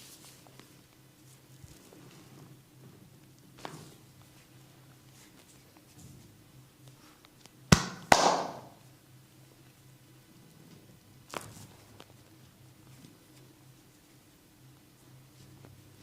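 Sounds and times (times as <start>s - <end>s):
hand slaps: 7.7s - 8.8s.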